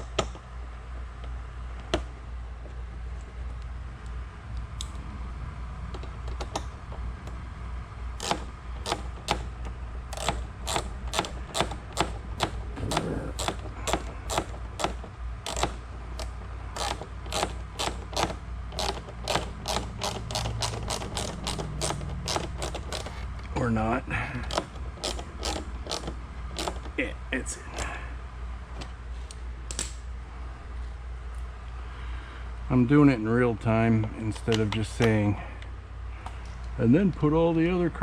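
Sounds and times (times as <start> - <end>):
hand ratchet clicking: 8.2 - 23.3, 24.3 - 27.0.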